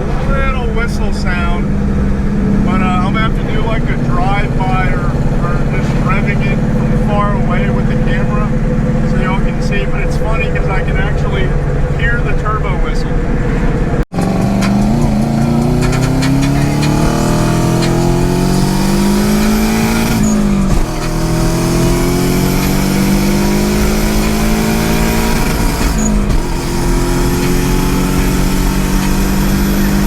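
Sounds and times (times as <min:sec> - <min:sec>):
car engine accelerating: 0:00.0 - 0:30.0
high turbo whistle: 0:13.3 - 0:30.0.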